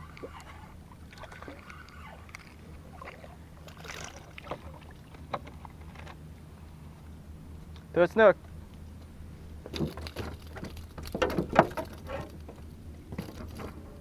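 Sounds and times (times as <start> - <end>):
water sloshing and splashing: 0.0 - 6.3, 9.6 - 14.0
steady low hum: 0.0 - 14.0
sharp clicks and knocks: 9.7 - 13.8.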